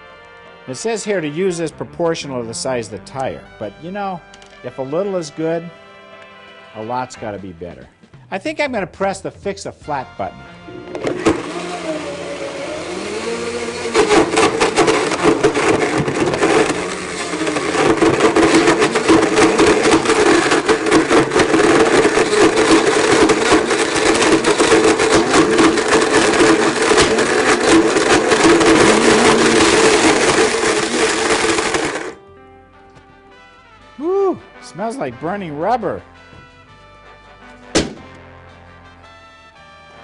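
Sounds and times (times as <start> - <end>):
blender motor running: 10.6 - 32.2
pieces clattering in blender jar: 13.4 - 32.0.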